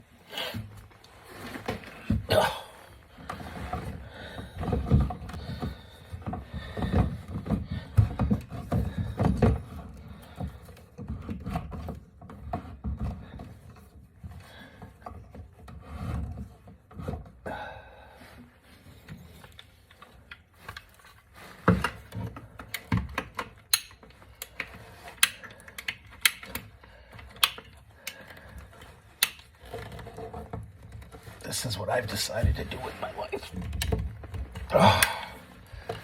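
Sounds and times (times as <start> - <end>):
hands handling objects: 18.4 - 36.0.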